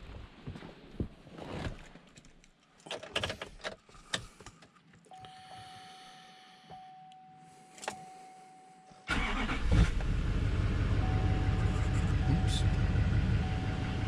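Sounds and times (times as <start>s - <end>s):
diesel engine cranking and idling: 9.1s - 14.0s
electronic chime tone: 11.0s - 12.8s, 13.4s - 14.0s.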